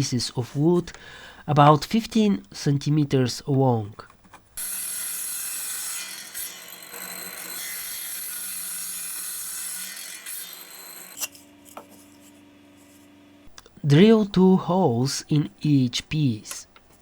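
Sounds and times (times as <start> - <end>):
power saw cutting wood: 4.6 - 13.4.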